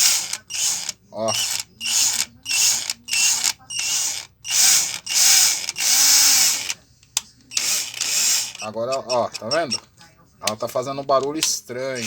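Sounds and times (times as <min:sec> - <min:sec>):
cordless drill running: 0:00.0 - 0:06.8, 0:07.5 - 0:09.8.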